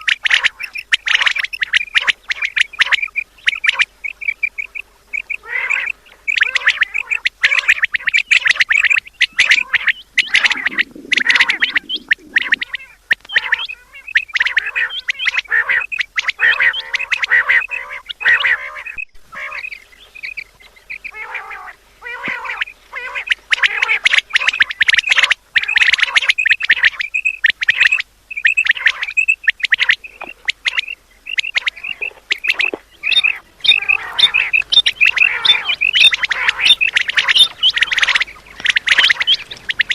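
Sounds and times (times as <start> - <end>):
quails calling: 0.0 - 39.9
low rumble: 10.1 - 12.7.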